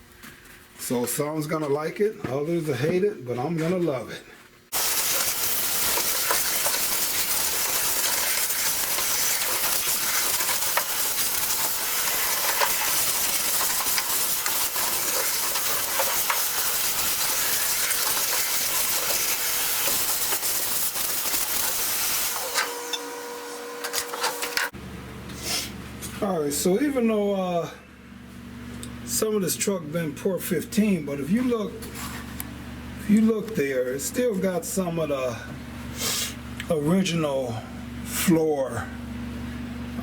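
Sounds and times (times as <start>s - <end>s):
loud steady hiss: 4.7s - 23.2s.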